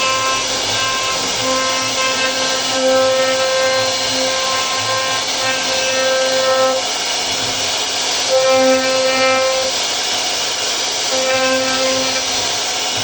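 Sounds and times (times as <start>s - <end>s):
cnc router cutting wood: 0.0s - 13.0s.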